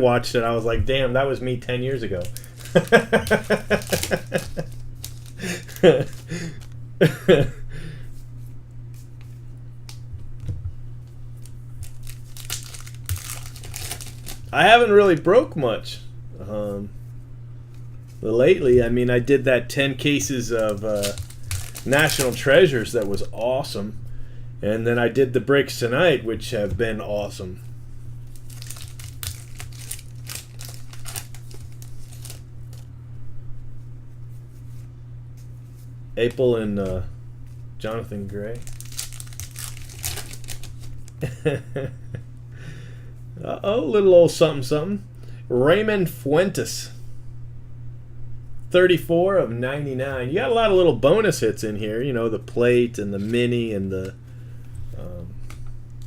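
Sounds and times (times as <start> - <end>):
low electrical hum: 0.0 - 56.0
foil wrappers crinkling and tearing: 2.0 - 7.2, 11.4 - 14.6, 20.2 - 23.4, 28.2 - 32.8, 38.5 - 41.4.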